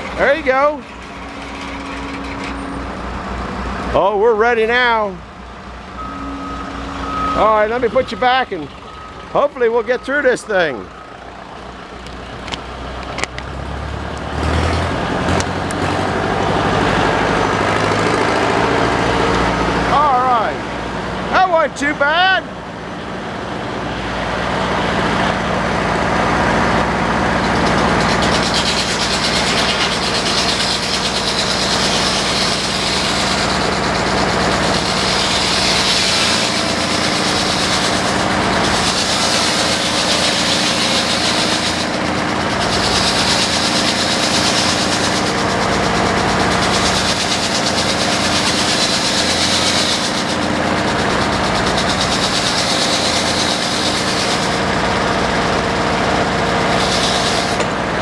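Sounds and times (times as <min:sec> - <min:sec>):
tractor engine running under load: 0:00.0 - 0:58.0
saw blade and belt hissing: 0:28.0 - 0:54.8, 0:56.5 - 0:57.7.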